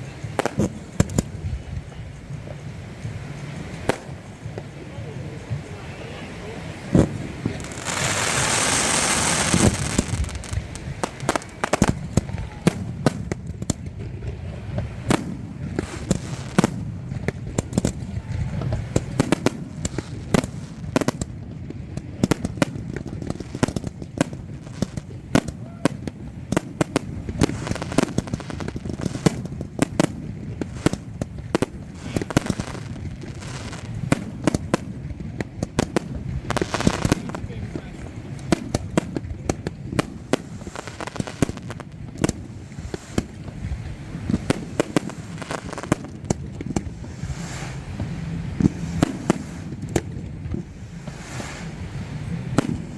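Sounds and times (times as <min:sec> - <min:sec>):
firework bangs and pops: 0:00.0 - 0:52.9
firework hiss: 0:00.0 - 0:52.9.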